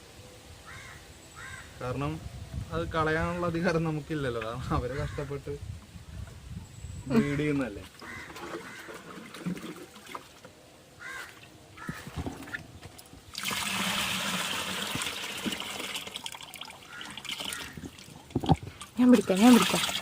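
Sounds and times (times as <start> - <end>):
water pouring: 7.9 - 10.5, 13.3 - 20.0.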